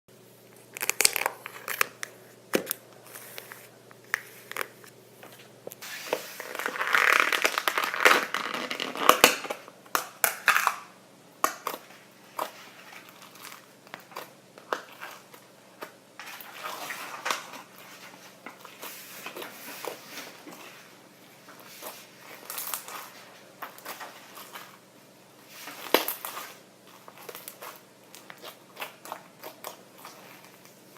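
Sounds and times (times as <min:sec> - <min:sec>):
slime beads crackling when squeezed: 0:06.4 - 0:09.5.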